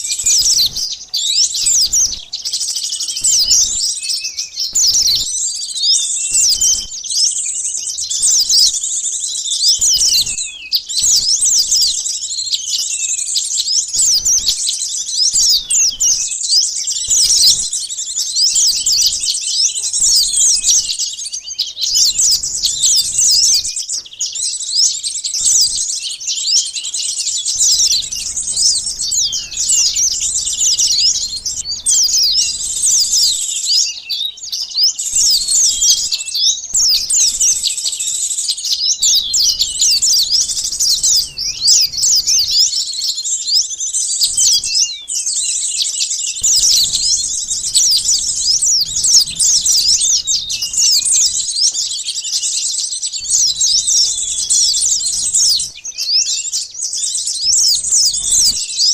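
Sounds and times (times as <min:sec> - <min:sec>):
small birds chirping: 0:00.0 - 0:58.9.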